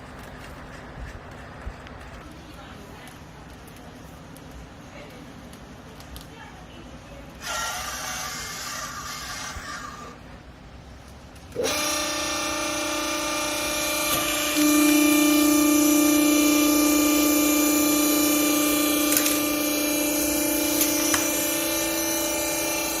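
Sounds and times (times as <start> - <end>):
hydraulic pump motor humming: 7.4 - 10.3, 11.4 - 23.0.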